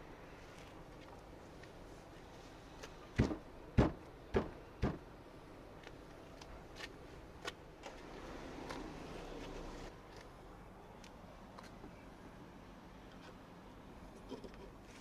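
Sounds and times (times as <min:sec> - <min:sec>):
sharp knocks of hard parts: 0:03.2 - 0:05.1.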